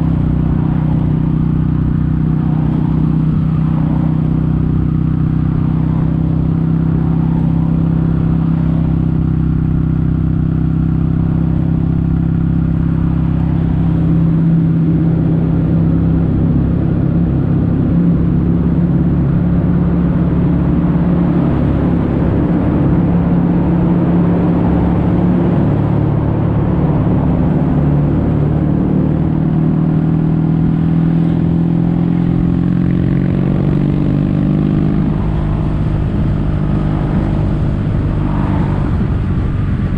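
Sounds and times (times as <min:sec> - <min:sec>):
motorcycle engine running: 0:00.0 - 0:39.9
road noise: 0:00.0 - 0:39.9
wind noise: 0:12.3 - 0:39.9.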